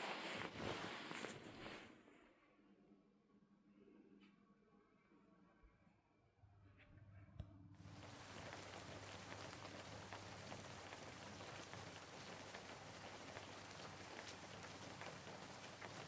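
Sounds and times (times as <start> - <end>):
steady rain falling: 7.8 - 16.0.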